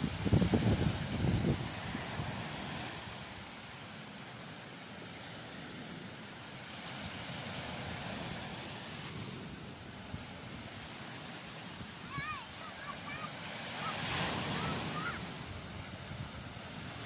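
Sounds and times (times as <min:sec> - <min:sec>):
wind on microphone: 0:00.0 - 0:03.4, 0:13.6 - 0:17.0
surf washing onto beach: 0:00.0 - 0:17.0.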